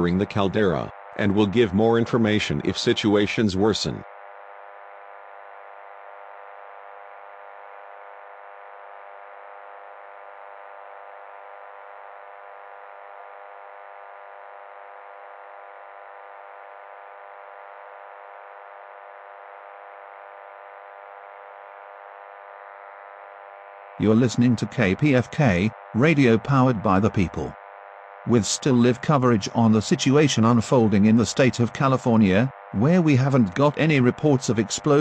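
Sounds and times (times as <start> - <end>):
steady buzzing hum: 0.0 - 35.0.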